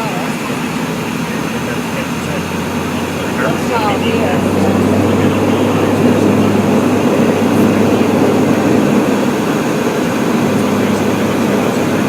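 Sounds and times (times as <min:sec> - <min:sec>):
airliner engine roar in cabin: 0:00.0 - 0:12.0
even hum: 0:00.0 - 0:12.0.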